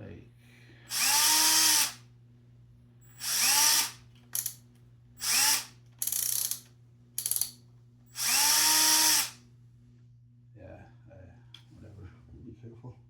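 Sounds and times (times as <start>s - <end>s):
drill rattling bursts: 0.9s - 2.0s, 3.1s - 4.6s, 5.2s - 6.6s, 7.2s - 7.5s, 8.1s - 9.4s
power drill motor whirring: 0.9s - 2.0s, 3.1s - 4.6s, 5.2s - 6.6s, 7.2s - 7.5s, 8.1s - 9.4s.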